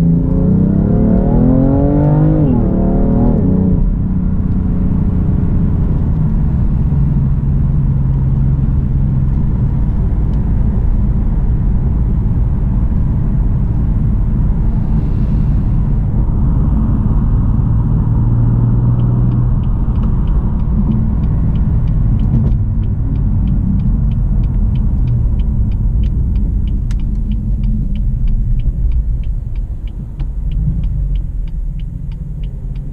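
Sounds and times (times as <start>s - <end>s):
car engine rumbling: 0.0s - 32.9s
light ticking: 18.8s - 32.9s.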